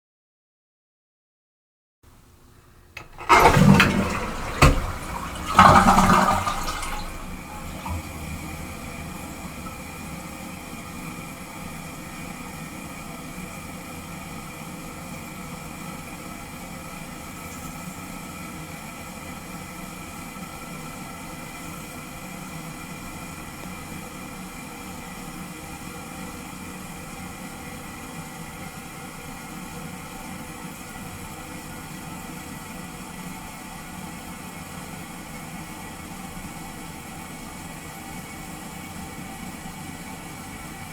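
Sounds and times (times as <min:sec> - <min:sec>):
toilet flushing: 0:02.5 - 0:22.3, 0:27.7 - 0:40.9
tank refilling hiss: 0:03.0 - 0:09.8.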